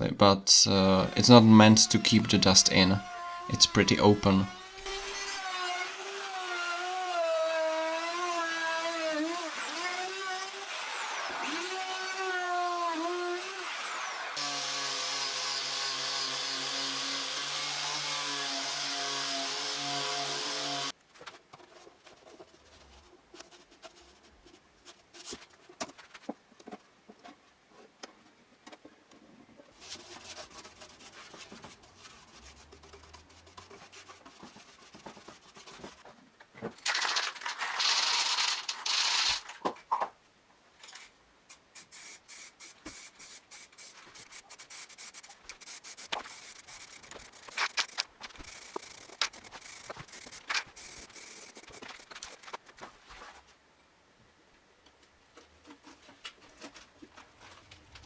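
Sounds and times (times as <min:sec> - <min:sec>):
power tool motor running: 0:04.5 - 0:07.1, 0:09.3 - 0:20.9, 0:44.6 - 0:52.5
rapid ticking: 0:44.2 - 0:52.5.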